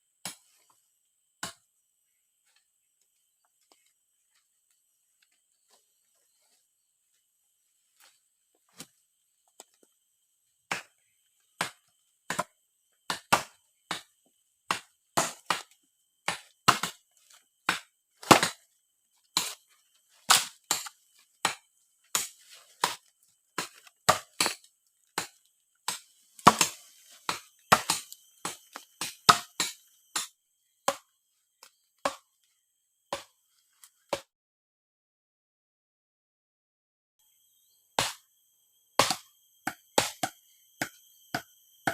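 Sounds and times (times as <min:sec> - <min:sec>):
sharp chopping strikes: 0:10.7 - 0:11.0, 0:13.1 - 0:14.1, 0:14.7 - 0:15.7, 0:16.3 - 0:17.0, 0:17.7 - 0:18.6, 0:20.3 - 0:23.0, 0:23.6 - 0:24.6, 0:25.2 - 0:31.1, 0:33.1 - 0:33.3, 0:34.1 - 0:34.3, 0:38.0 - 0:38.3, 0:39.0 - 0:41.9.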